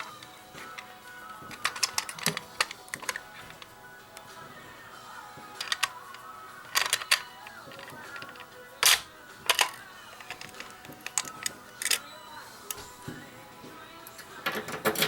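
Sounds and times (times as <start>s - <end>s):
tv music and voices: 0.0s - 15.0s
plastic clicks and knocks: 1.5s - 3.7s.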